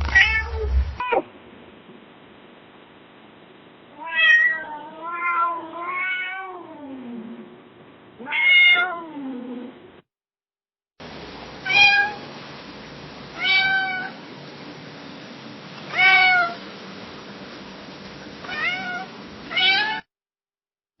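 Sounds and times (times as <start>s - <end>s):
cat meowing: 0.1s - 1.3s, 4.0s - 7.1s, 8.2s - 9.5s, 11.7s - 12.2s, 13.4s - 14.2s, 15.9s - 16.6s, 18.5s - 20.0s.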